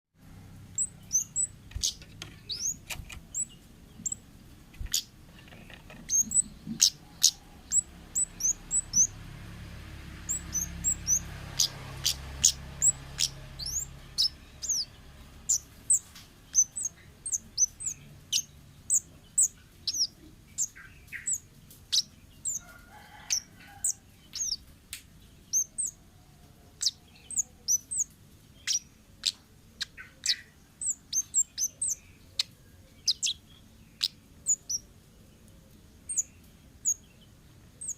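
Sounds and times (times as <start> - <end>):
faint low rumble: 0.2 - 22.7
birds chirping: 0.2 - 37.9.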